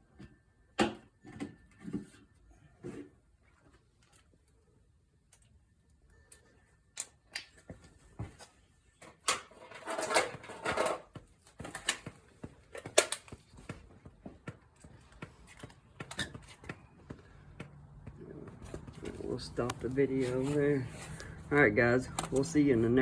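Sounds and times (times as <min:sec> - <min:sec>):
scraping and rattling: 0:09.2 - 0:11.1.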